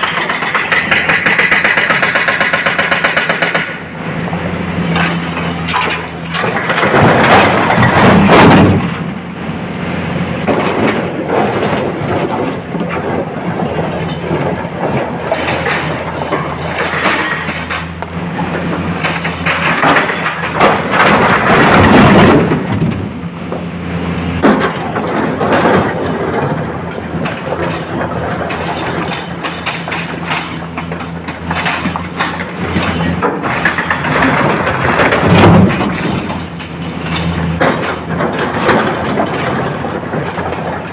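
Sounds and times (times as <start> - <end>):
excavator diesel engine running: 0.0 - 40.9
rocks crashing into truck body: 19.3 - 23.0, 32.9 - 40.7.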